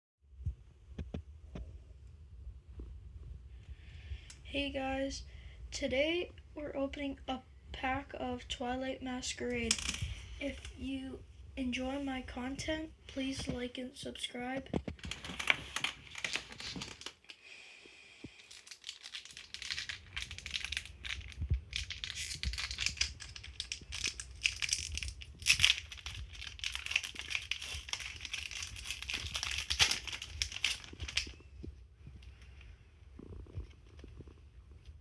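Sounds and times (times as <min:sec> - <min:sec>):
foil wrapper crinkling: 0:15.0 - 0:17.4, 0:18.4 - 0:31.5.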